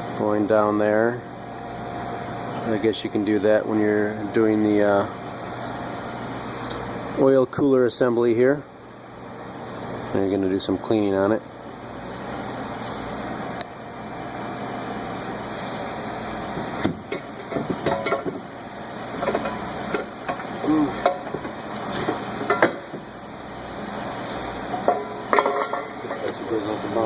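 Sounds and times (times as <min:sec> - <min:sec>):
steady background hiss: 0:00.0 - 0:27.0
metal tools clinking and scraping: 0:24.8 - 0:26.4.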